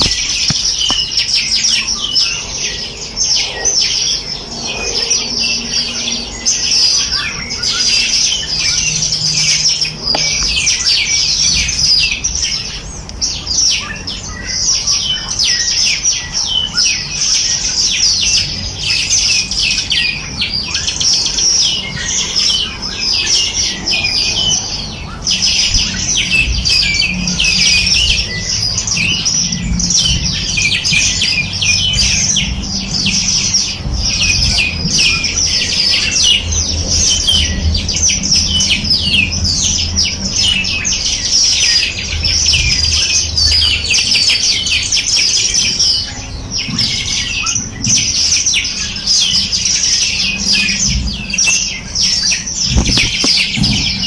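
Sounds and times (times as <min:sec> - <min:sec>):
songbirds chirping and trilling: 0:00.0 - 0:54.0
steady low rumble: 0:19.5 - 0:47.4.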